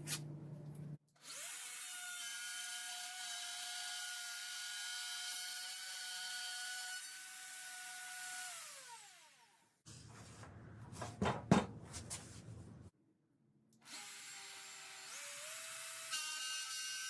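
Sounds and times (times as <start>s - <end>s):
sharp knocks and clatter: 10.9s - 12.2s.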